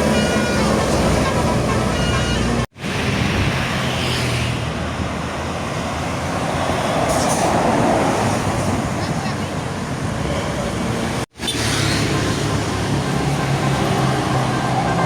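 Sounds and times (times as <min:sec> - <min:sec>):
multi-tone bus horn: 0:00.0 - 0:02.7, 0:12.8 - 0:15.0
bus engine: 0:00.0 - 0:15.0
passing vehicles: 0:00.0 - 0:15.0.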